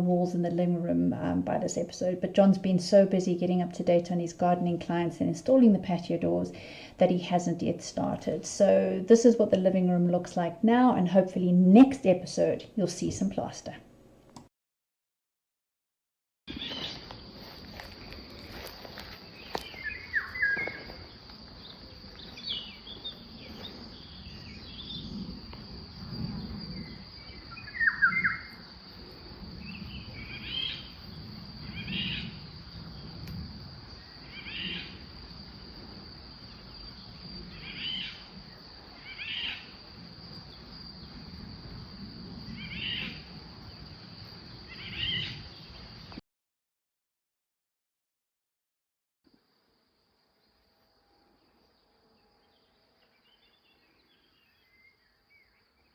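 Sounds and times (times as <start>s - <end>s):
birds singing: 16.5s - 17.1s, 19.2s - 25.3s, 26.4s - 28.8s, 29.6s - 33.1s, 44.7s - 46.2s, 52.2s - 55.9s.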